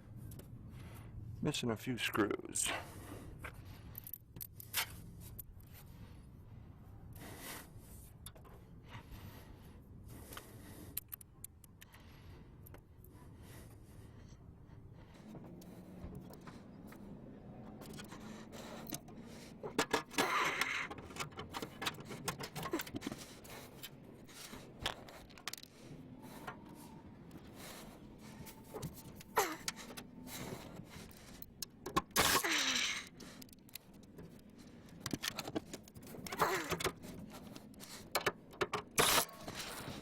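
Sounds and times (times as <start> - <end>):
screws and tools clinking: 17.8 - 25.7, 28.2 - 40.0.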